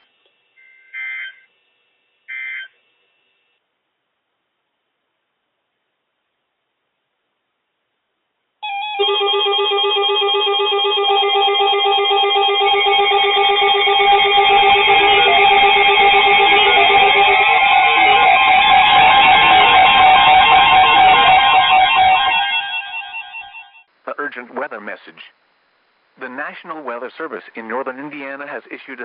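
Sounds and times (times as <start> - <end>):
electronic alarm beeps: 8.6 - 23.8
steady alarm tones: 8.6 - 23.9.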